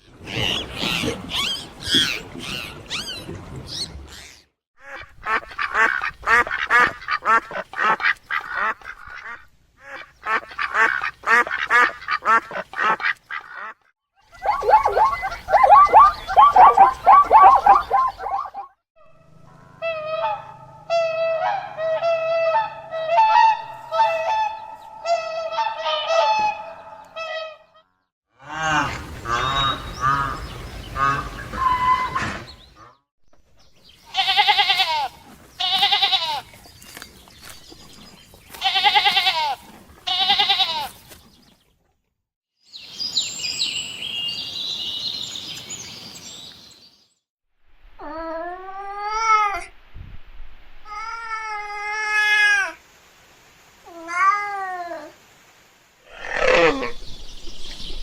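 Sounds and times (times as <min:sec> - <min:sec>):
animals calling: 0:00.0 - 0:18.8, 0:28.4 - 0:33.0, 0:56.1 - 0:58.0.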